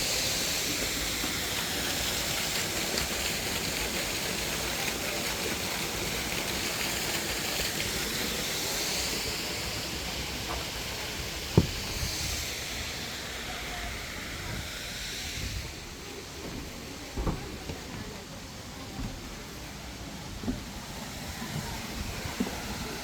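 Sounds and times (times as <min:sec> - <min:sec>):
sharp knock: 0:11.6 - 0:12.0.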